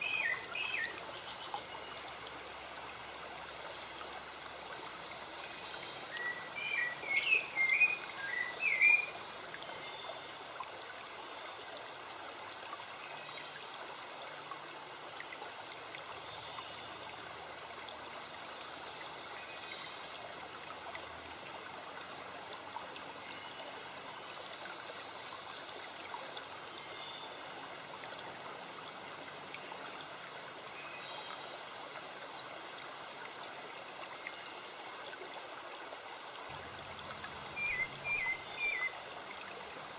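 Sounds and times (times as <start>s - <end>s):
stream flowing: 0.0s - 39.9s
songbird warbling: 6.2s - 9.1s, 37.5s - 39.0s.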